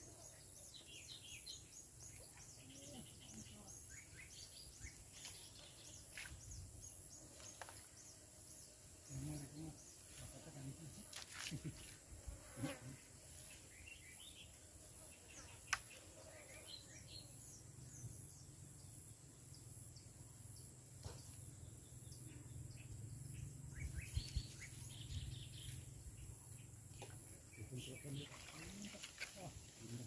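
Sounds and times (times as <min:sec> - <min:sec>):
bird chirps: 0:21.0 - 0:29.0.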